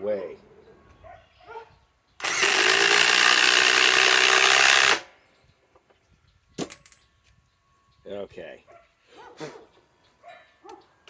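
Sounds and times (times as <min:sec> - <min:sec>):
impact wrench driving fastener: 0:02.2 - 0:05.0.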